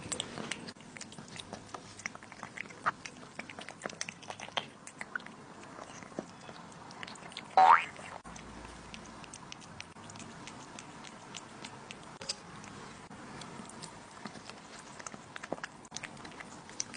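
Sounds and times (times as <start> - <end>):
cat crunching dry treats: 0.0 - 16.9.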